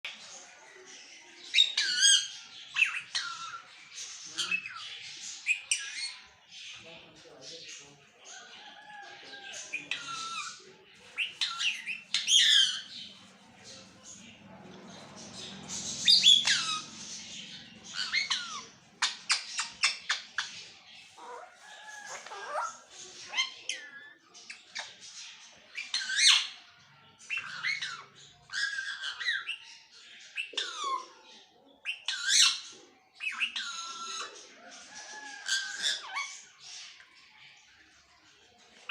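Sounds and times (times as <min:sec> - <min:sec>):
parrot talking and squawking: 0:01.5 - 0:03.8, 0:09.7 - 0:13.5, 0:14.8 - 0:25.0, 0:25.7 - 0:26.6, 0:27.3 - 0:29.6, 0:30.4 - 0:31.2, 0:31.9 - 0:34.5, 0:35.4 - 0:36.6
parrot chattering: 0:15.5 - 0:20.5.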